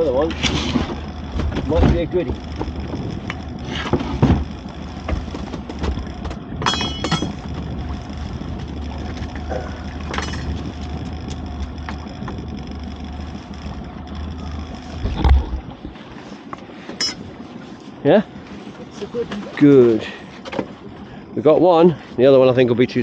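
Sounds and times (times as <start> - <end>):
gear knocking and clattering: 0.0 - 16.1
outboard motor idling: 0.0 - 23.0.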